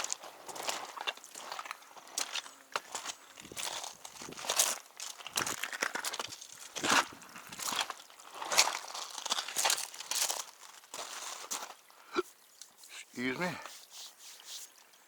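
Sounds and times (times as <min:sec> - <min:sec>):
footsteps crunching on forest floor: 0:00.0 - 0:11.9.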